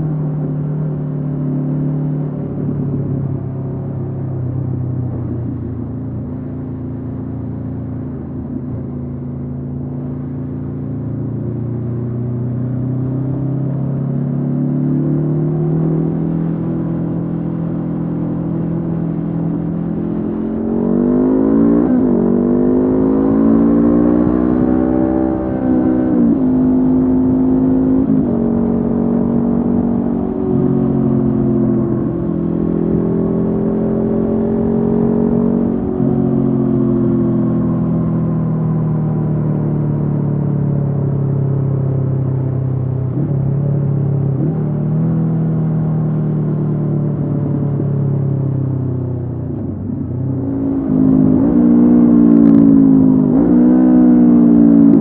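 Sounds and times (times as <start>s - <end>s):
motorcycle engine revving: 11.5s - 55.0s.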